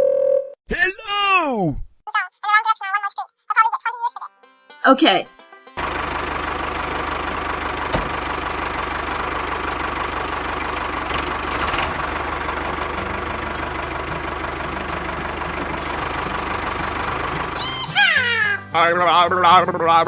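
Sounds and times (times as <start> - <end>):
tractor engine idling: 5.8 - 20.0.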